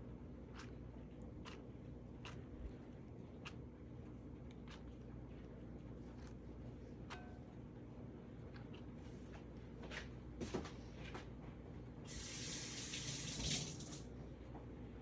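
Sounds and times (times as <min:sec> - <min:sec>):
tap running into sink: 0:12.1 - 0:14.0.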